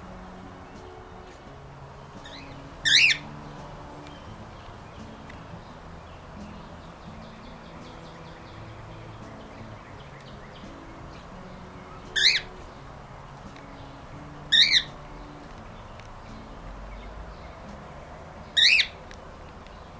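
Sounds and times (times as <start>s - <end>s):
faint wild birds chirping: 0.0s - 19.9s
cockatiel squawking: 2.2s - 3.3s, 11.8s - 12.6s, 14.5s - 15.0s, 18.6s - 19.0s.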